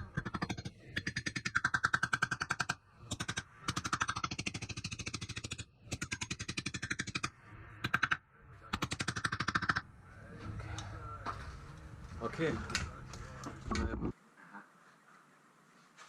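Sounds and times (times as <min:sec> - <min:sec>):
rapid mechanical clicking of tool: 0:00.0 - 0:09.8.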